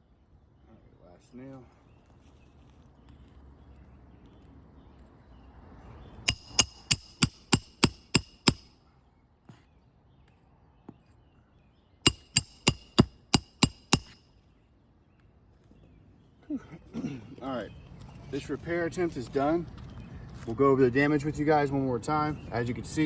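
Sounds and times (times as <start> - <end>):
hammer driving nails into shingle: 6.3 - 8.7, 12.1 - 14.2.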